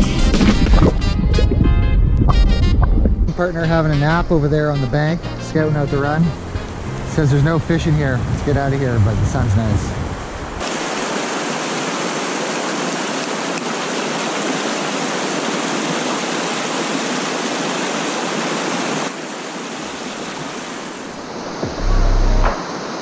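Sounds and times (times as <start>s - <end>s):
river water rushing: 4.2s - 9.2s, 9.8s - 23.0s.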